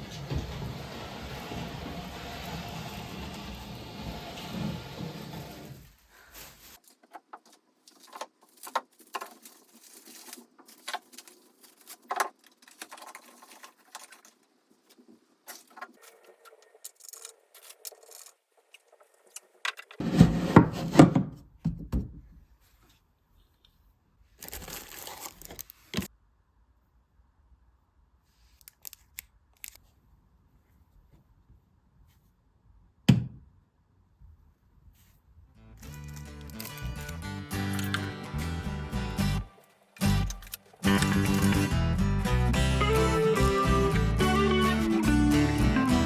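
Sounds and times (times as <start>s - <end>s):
knocks and rustling: 0.0s - 5.9s
objects being handled: 4.4s - 21.0s.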